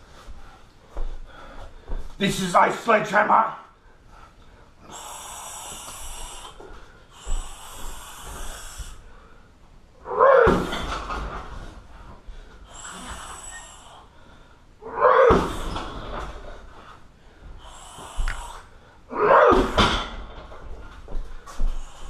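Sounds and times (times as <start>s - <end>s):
long hissing exhalations: 4.6s - 9.6s, 11.8s - 14.8s, 15.4s - 19.1s, 21.6s - 22.0s.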